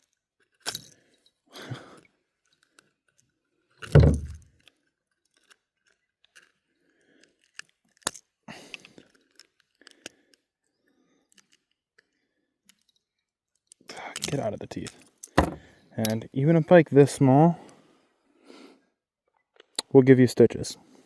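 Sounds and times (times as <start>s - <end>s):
rustling thump: 3.9s - 4.5s, 15.4s - 15.7s
handling clicks and rustles: 12.7s - 16.3s.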